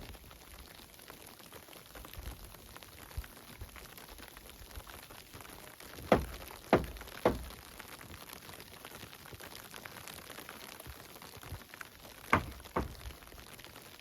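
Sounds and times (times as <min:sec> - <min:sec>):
faint steady hiss: 0:00.0 - 0:14.0
sharp knocks: 0:06.1 - 0:07.6, 0:12.4 - 0:13.1.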